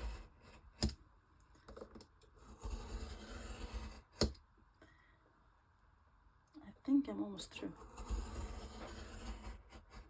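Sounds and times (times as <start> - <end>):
knife scoring board: 7.8 - 10.0.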